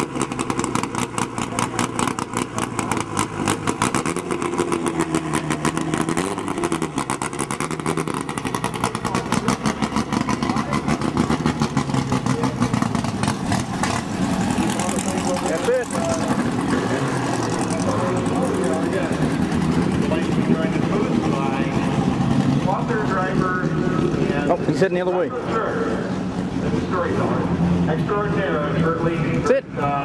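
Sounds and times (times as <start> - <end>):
race car engine running: 0.0 - 30.0.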